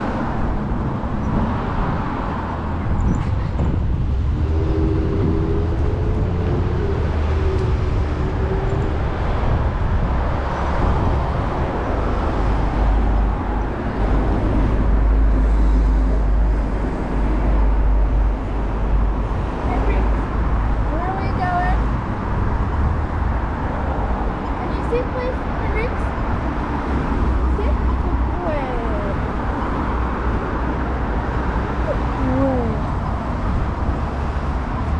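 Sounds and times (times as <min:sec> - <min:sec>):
wind buffeting microphone: 0:00.0 - 0:34.9.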